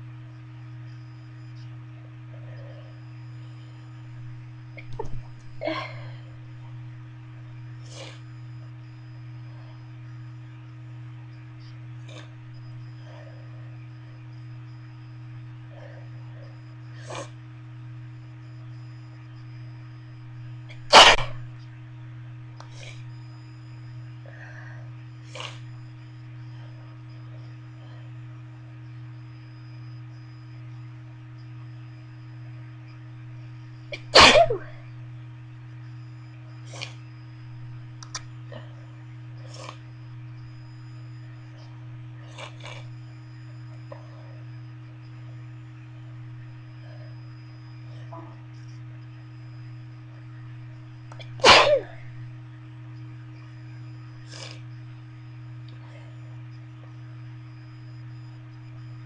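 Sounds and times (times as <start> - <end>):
steady low hum: 0.0 - 59.0
person sneezing: 20.9 - 21.4, 34.0 - 34.7, 51.4 - 52.0.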